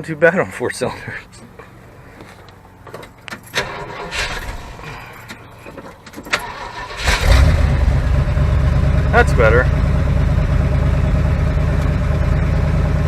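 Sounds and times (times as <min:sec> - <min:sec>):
truck engine cranking and starting: 0:02.8 - 0:13.0.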